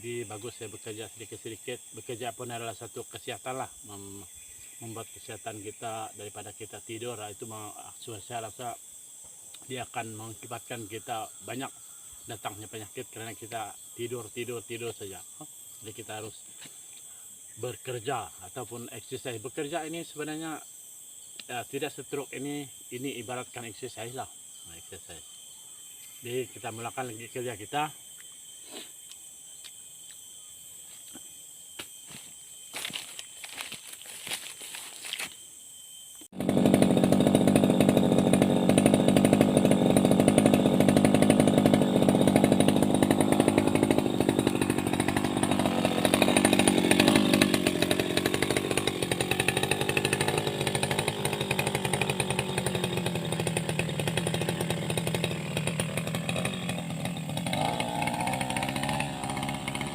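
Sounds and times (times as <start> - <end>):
insect trilling: 0.0 - 59.9
brush cutter engine: 32.7 - 35.4, 36.3 - 59.9.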